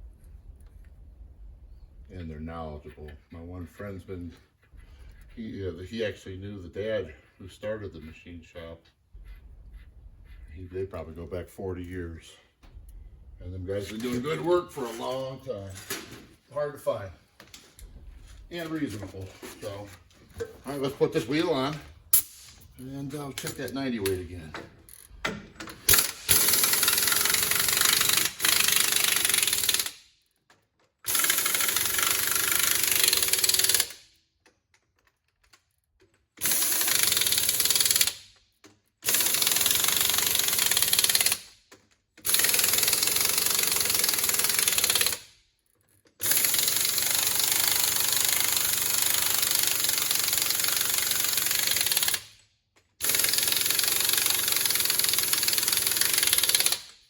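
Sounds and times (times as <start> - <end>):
air impact wrench bursts: 21.6 - 22.8, 25.7 - 30.0, 31.1 - 34.1, 36.4 - 38.3, 39.0 - 41.5, 42.2 - 45.3, 46.2 - 52.3, 53.0 - 57.0.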